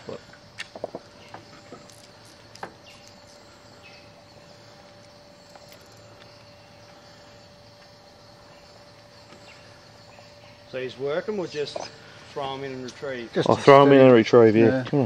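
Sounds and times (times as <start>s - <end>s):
insect drone: 0.0s - 15.0s
faint bird chirps: 2.8s - 7.4s.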